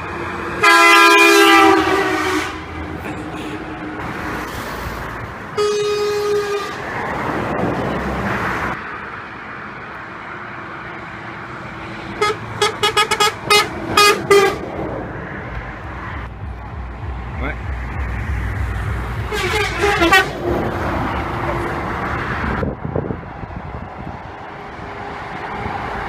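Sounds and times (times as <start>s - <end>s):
vehicle passing: 0.0s - 26.0s
truck horn blasts: 0.6s - 3.6s, 5.6s - 6.9s, 12.1s - 14.6s, 18.8s - 20.6s.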